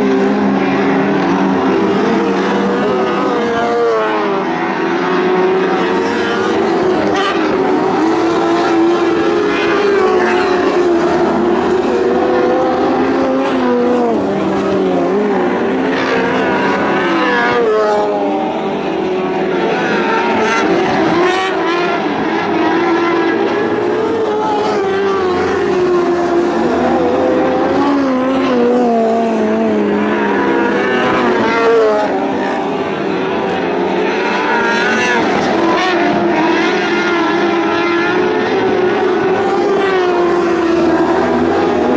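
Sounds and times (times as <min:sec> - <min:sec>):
race car engines running hard: 0:00.0 - 0:41.9.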